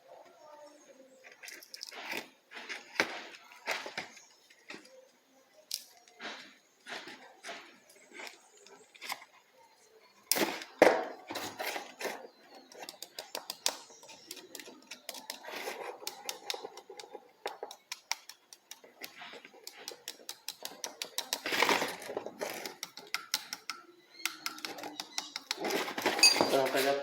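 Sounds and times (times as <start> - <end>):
rustling handling noise: 24.6 - 27.0.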